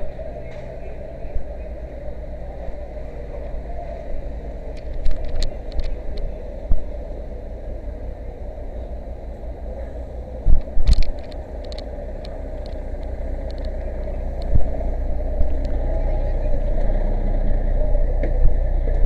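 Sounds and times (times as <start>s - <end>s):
engine low drone: 0.0s - 19.0s
light clicks: 10.5s - 14.8s.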